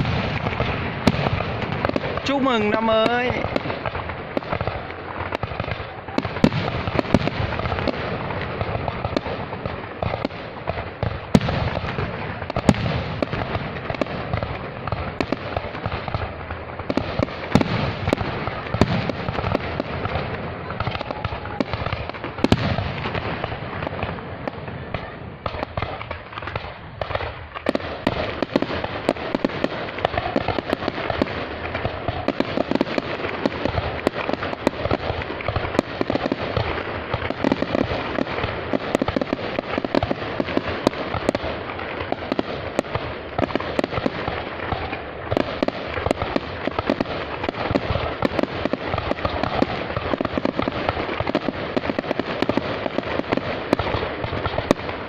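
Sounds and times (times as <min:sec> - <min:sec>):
fireworks popping and banging: 0:00.0 - 0:55.0.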